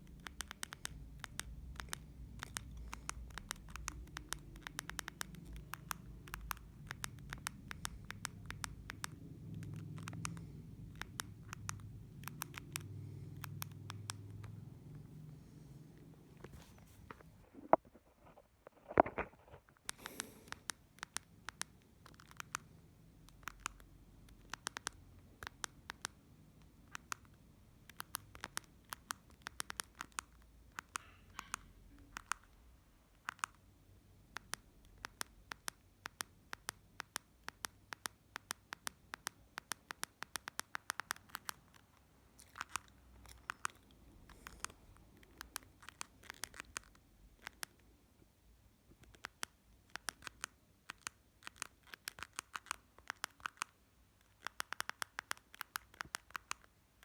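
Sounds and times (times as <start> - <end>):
phone keypad buttons clicking: 0.0 - 15.0.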